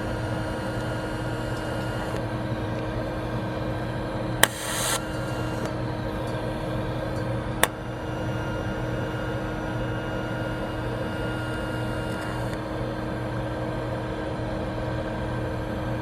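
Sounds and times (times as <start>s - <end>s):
welding machine electrical hum: 0.0s - 16.0s
sharp click: 4.4s - 6.4s.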